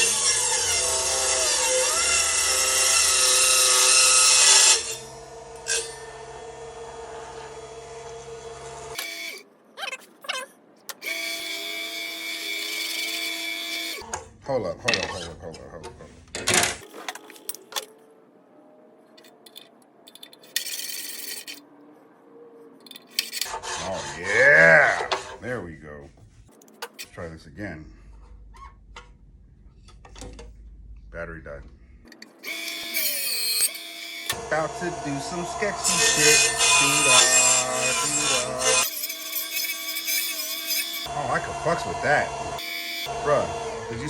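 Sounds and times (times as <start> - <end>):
table saw cutting plywood: 0.0 - 9.4, 23.2 - 25.4, 32.4 - 44.0
saw motor idling: 34.3 - 38.8, 41.0 - 44.0.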